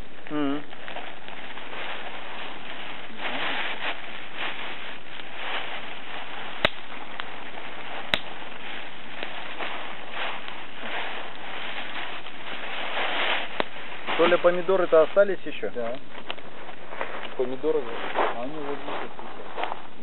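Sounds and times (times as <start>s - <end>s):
campfire crackling: 0.0s - 20.0s
sharp loud pops: 6.6s - 7.3s, 8.1s - 8.4s, 13.2s - 14.4s.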